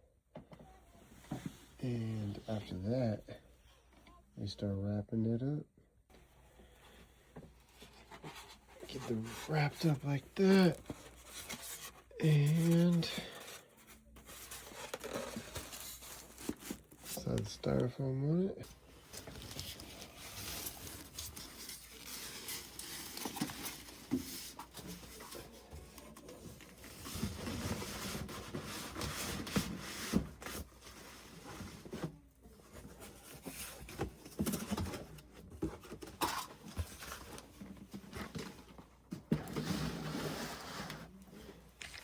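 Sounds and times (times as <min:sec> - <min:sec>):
styrofoam and cardboard scraping: 0:07.9 - 0:17.5, 0:39.3 - 0:41.2.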